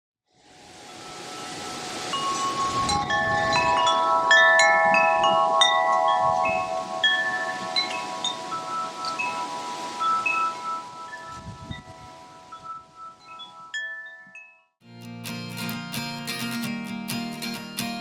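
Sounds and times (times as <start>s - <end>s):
soft wind hiss: 0.4s - 13.6s
wind chimes ringing: 0.8s - 14.8s.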